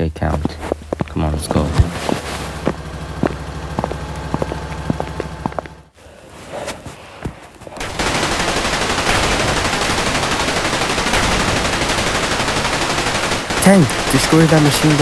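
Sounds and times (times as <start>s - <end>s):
machine-gun fire: 7.8s - 15.0s.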